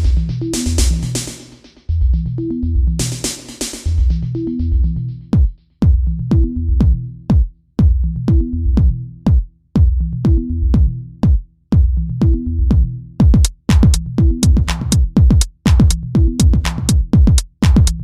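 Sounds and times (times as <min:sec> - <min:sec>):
electronic music: 0:00.0 - 0:05.4, 0:12.2 - 0:18.0.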